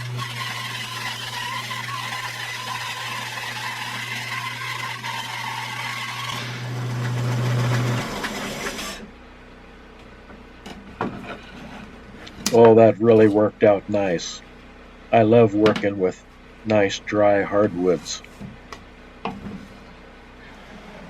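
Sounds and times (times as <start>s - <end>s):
saw blade rasping through wood: 0.0s - 9.0s
bandsaw motor hum: 0.0s - 21.0s.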